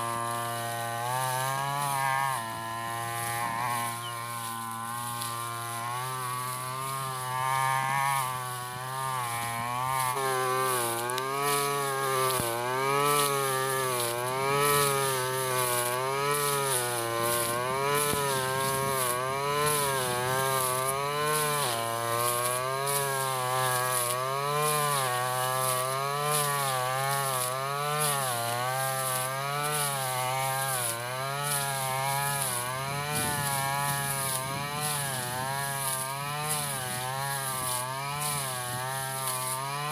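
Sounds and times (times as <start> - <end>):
brushcutter engine running: 0.0 - 39.9.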